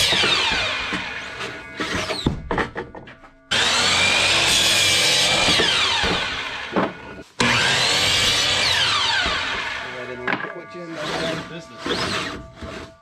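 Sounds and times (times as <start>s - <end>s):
power saw cutting wood: 0.0s - 2.4s, 3.5s - 13.0s
wood knocking: 1.8s - 3.3s, 10.2s - 10.6s.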